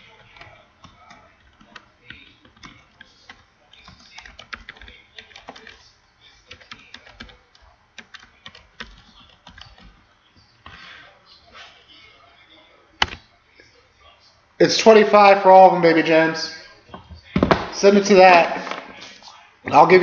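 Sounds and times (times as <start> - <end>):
typing on computer keyboard: 0.0 - 5.8, 6.5 - 10.0.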